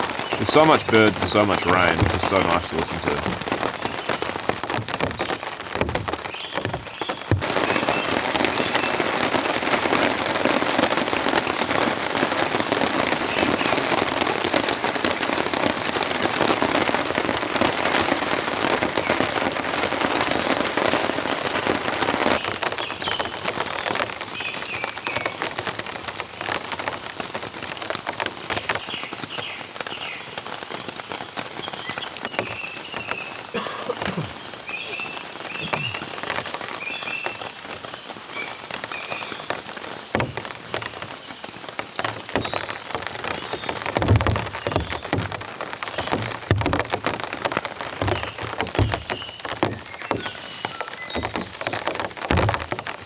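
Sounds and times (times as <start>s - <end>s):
heavy rain falling: 0.0s - 53.0s
faint bird calls: 34.1s - 36.3s.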